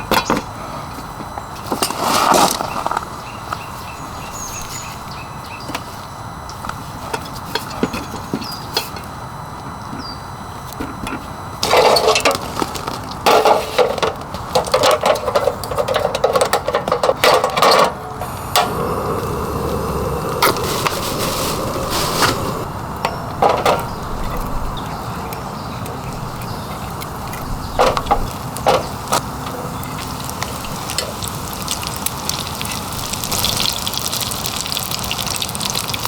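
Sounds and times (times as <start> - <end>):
rain hissing: 11.6 - 14.6, 18.1 - 36.0
camping gear clattering: 11.6 - 23.9.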